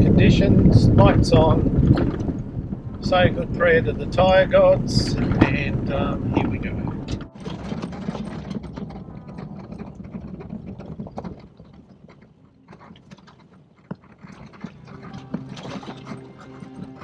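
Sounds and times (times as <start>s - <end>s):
gravel road rumble: 0.0s - 17.0s
stones and fittings rattling: 4.1s - 17.0s.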